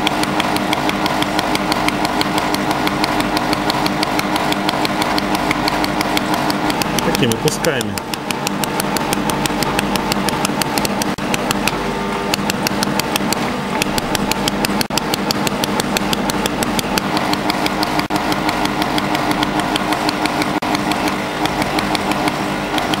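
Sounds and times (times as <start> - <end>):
machine hum: 0.0 - 23.0.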